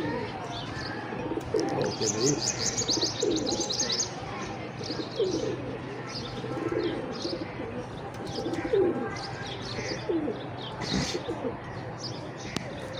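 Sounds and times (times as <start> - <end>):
pigeons cooing: 0.0 - 11.8
small birds chirping: 0.0 - 12.9.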